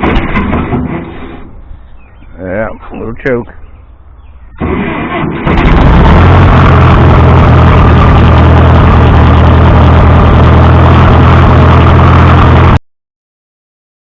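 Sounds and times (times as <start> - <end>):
tractor engine running: 4.6 - 12.8.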